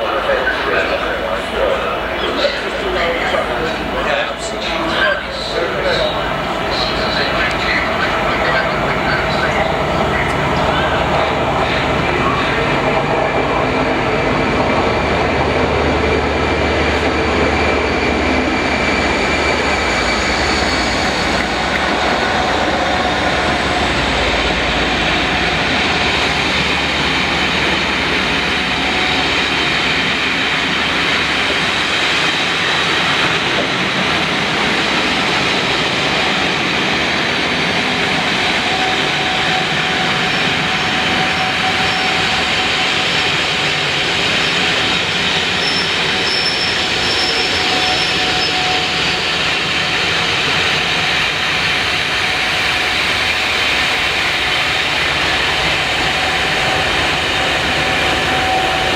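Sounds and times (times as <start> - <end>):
train wheels rolling on rails: 0.0 - 58.9
faint high squeal: 45.6 - 49.3.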